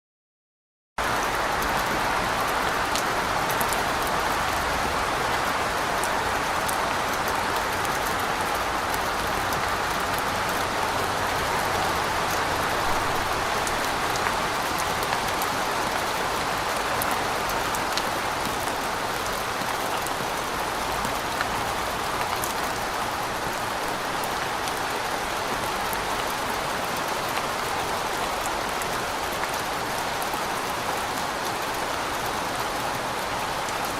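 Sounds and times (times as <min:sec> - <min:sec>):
steady rain hiss: 0:01.0 - 0:33.9.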